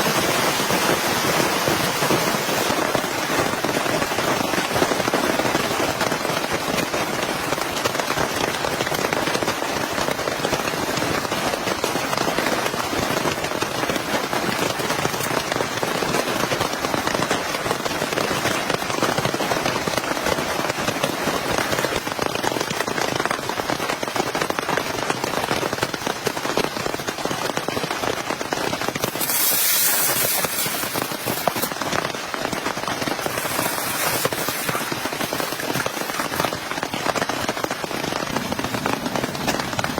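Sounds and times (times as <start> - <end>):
heavy rain pattering: 0.0 - 39.9.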